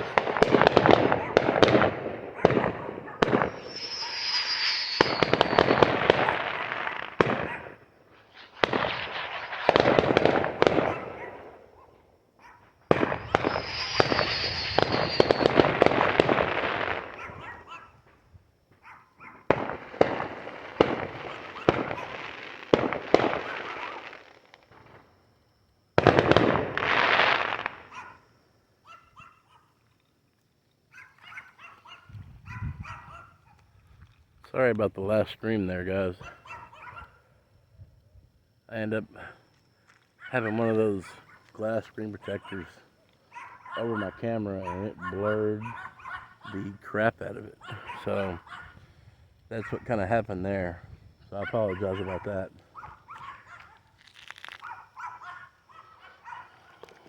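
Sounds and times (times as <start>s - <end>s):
fireworks crackling volleys: 0.0s - 28.7s, 31.2s - 57.0s
falling whistle of fireworks: 0.0s - 30.0s, 31.0s - 34.2s, 35.7s - 57.0s
dog barking faintly: 6.2s - 7.8s, 10.8s - 13.4s, 17.1s - 18.0s, 18.8s - 19.5s, 27.9s - 29.8s, 30.9s - 33.7s, 36.2s - 37.3s, 40.2s - 47.0s, 47.6s - 48.8s, 49.5s - 50.0s, 51.3s - 56.9s.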